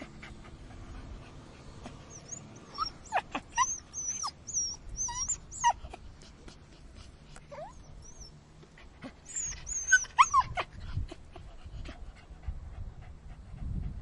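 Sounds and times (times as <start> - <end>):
low rumbling background noise: 0.0 - 14.0
puppy whimpering and squealing: 2.1 - 6.0, 7.5 - 8.4, 9.0 - 11.5.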